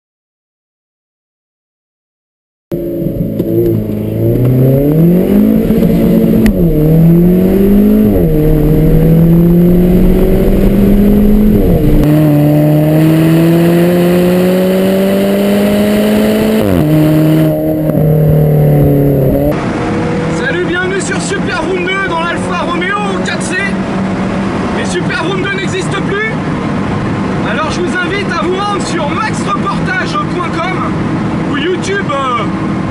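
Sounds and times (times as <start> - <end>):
car engine accelerating through gears: 2.7 - 27.6.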